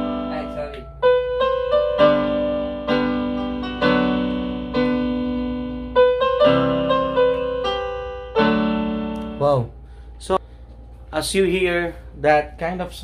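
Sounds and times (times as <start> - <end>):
electronic keyboard piano chords: 0.0 - 9.9.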